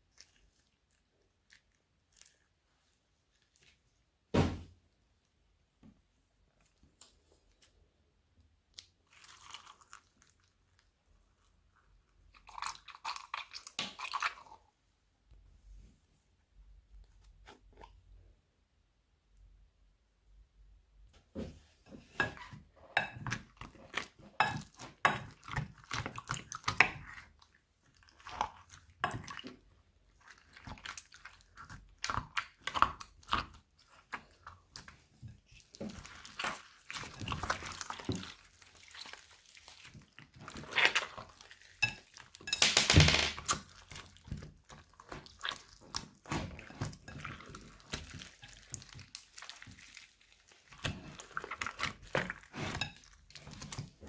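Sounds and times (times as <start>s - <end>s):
slime squelching and crackling: 0.0s - 4.3s, 6.4s - 14.7s, 22.2s - 54.0s.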